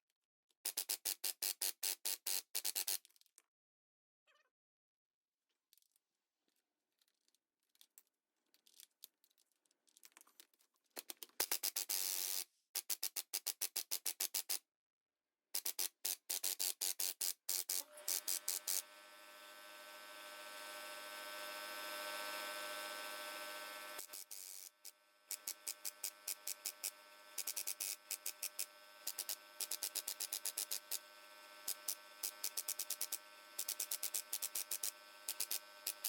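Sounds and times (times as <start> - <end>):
steady motor hum: 17.8 - 36.0.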